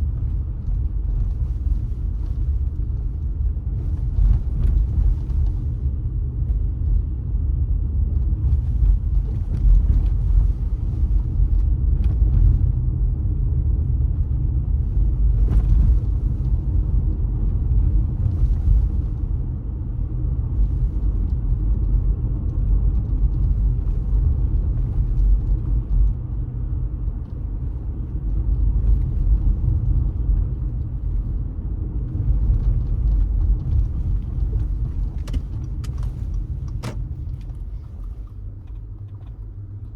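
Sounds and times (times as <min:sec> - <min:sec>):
car engine and tyres rumbling: 0:00.0 - 0:39.9
faint light clicks and rattles: 0:32.1 - 0:39.9.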